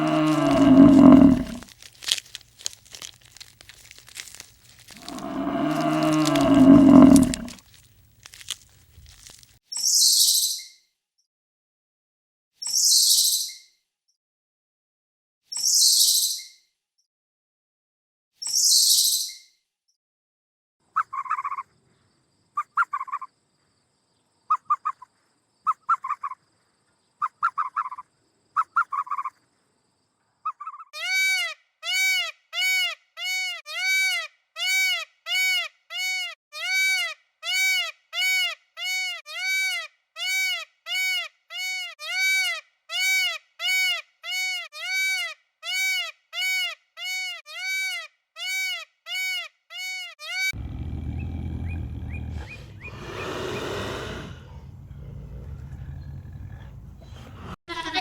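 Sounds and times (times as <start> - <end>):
bird calls: 0.0 - 1.6, 5.0 - 7.5, 51.1 - 57.5.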